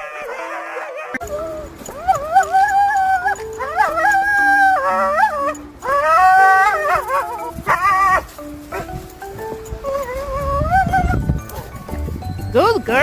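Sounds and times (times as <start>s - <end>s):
dog howling: 0.0s - 11.9s.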